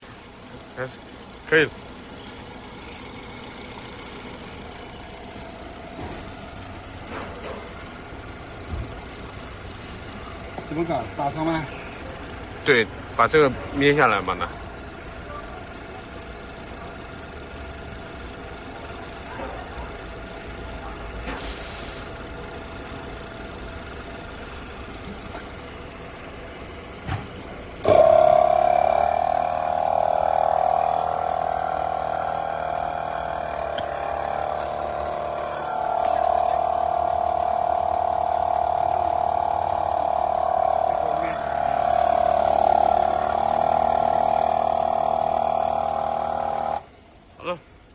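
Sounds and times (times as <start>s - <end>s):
motor running: 0.0s - 12.6s, 21.2s - 47.0s
air hissing: 21.2s - 22.1s.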